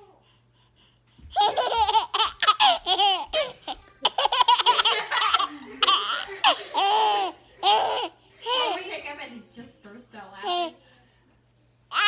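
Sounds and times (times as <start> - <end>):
baby laughing: 1.3 - 8.9.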